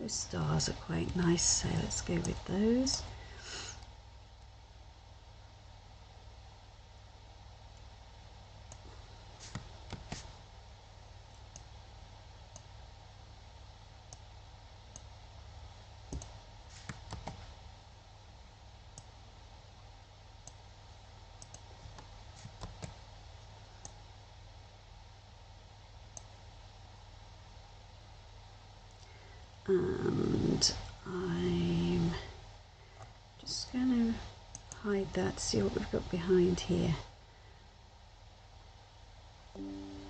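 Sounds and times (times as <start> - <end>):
faint low hum: 0.0 - 40.0
computer mouse clicking: 8.7 - 10.3, 11.4 - 11.7, 12.5 - 12.7, 14.9 - 15.1, 16.1 - 17.5, 21.4 - 23.0, 23.8 - 24.0, 26.1 - 26.4.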